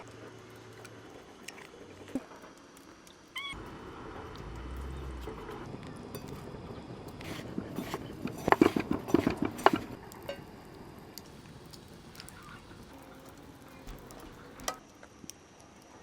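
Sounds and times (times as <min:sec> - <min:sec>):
kitchen taps and knocks: 0:07.2 - 0:10.4.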